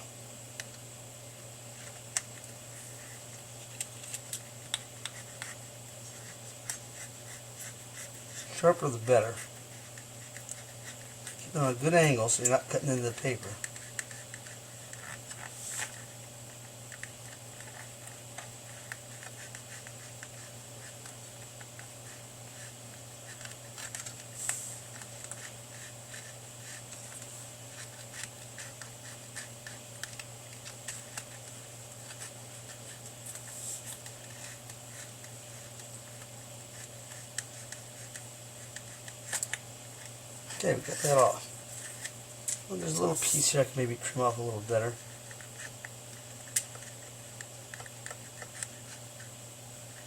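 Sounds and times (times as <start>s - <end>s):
steady low hum: 0.0s - 50.0s
knife scratching foam: 5.0s - 11.8s, 18.6s - 27.1s.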